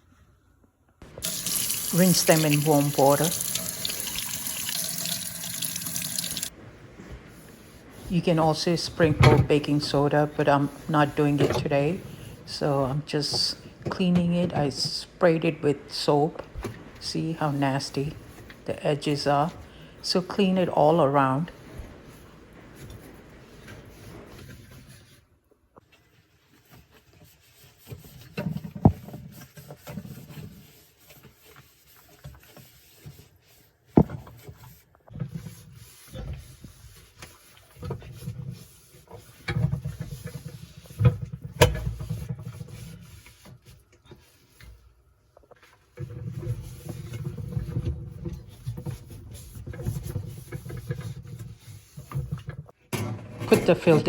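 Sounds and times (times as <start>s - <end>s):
scrubbing and rubbing: 1.2s - 6.5s, 19.0s - 52.8s.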